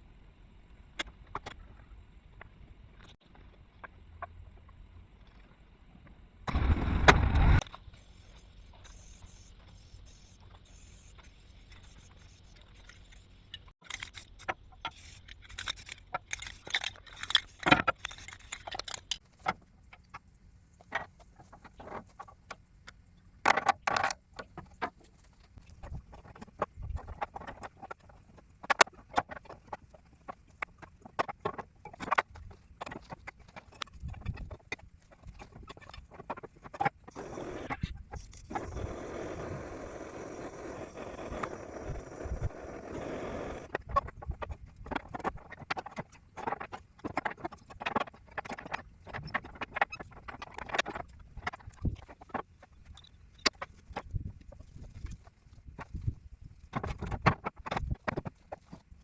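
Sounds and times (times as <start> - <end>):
low steady hum: 0.0 - 7.7.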